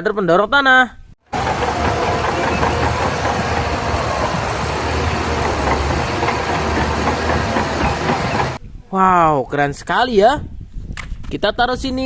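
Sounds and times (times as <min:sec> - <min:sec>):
diesel engine rumbling: 0:01.3 - 0:08.6.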